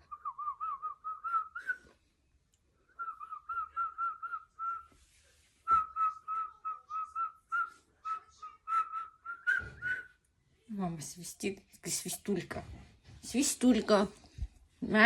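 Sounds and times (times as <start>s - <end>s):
woman whistling: 0.0s - 1.9s, 2.9s - 4.9s, 5.7s - 10.2s.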